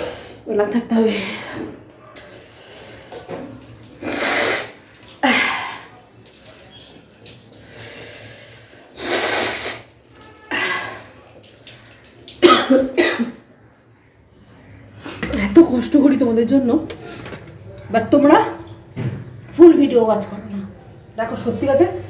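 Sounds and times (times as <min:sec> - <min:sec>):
woman coughing: 0:12.4 - 0:13.4.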